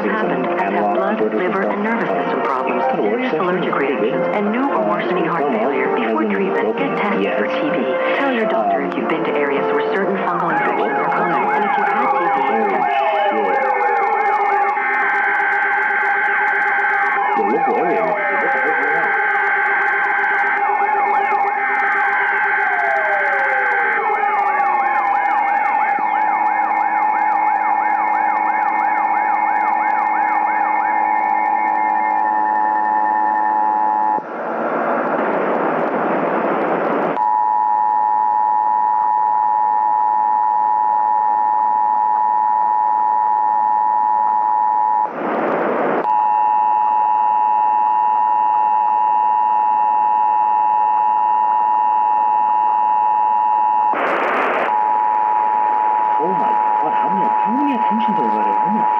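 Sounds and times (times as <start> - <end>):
noise burst: 32.1 - 37.2, 44.7 - 46.1, 53.7 - 58.9.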